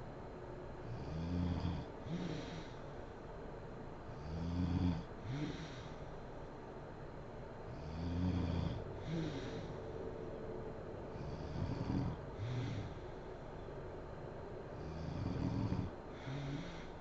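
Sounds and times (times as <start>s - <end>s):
woman snoring: 0.9s - 2.8s, 4.1s - 6.0s, 7.7s - 9.7s, 11.2s - 13.1s, 14.8s - 17.0s
snorting: 11.2s - 13.1s, 14.8s - 16.9s.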